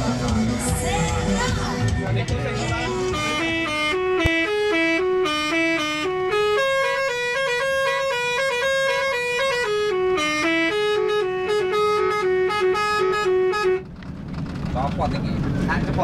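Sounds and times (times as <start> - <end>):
musical air horn melody: 2.3 - 13.9.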